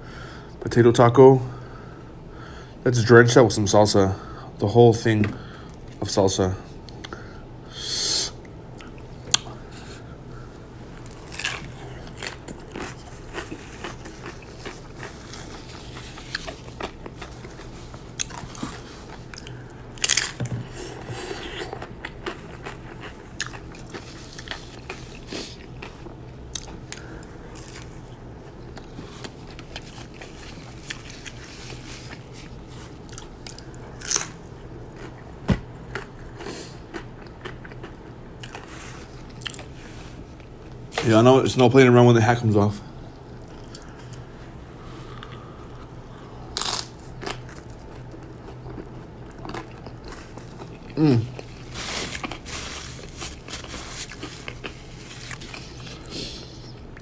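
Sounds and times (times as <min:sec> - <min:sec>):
crunchy chewing and biting: 0:10.9 - 0:40.8, 0:45.1 - 0:57.0.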